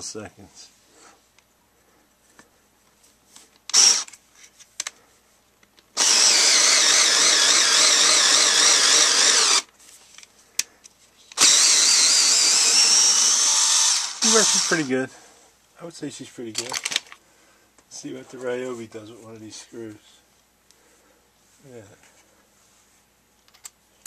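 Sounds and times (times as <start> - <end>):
cordless screwdriver driving screws: 3.7 - 4.2, 6.0 - 9.7, 11.4 - 14.9.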